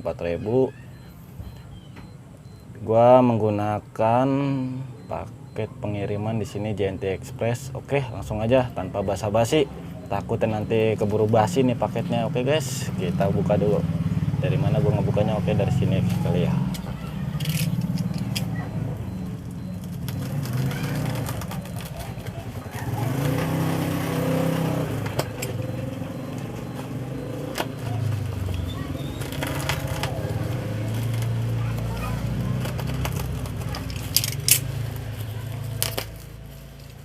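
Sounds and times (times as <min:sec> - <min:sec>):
plastic packaging rustling and tearing: 0:19.8 - 0:23.6, 0:26.6 - 0:37.0.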